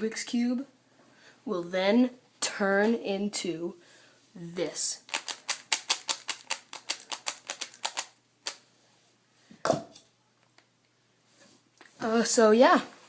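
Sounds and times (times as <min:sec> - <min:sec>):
puzzle cube plastic clicks: 0:05.0 - 0:08.6.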